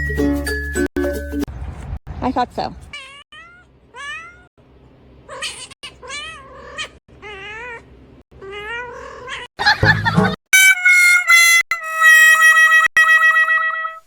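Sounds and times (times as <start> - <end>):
cat meowing: 2.9 - 4.5, 5.3 - 9.5.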